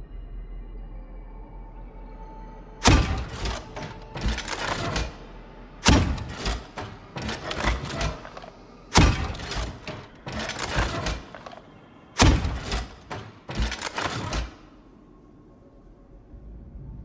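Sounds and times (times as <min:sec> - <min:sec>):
grenade launcher shots: 0:02.8 - 0:05.2, 0:05.8 - 0:11.6, 0:12.2 - 0:14.6
weapon mechanism clicks and clunks: 0:02.8 - 0:14.8.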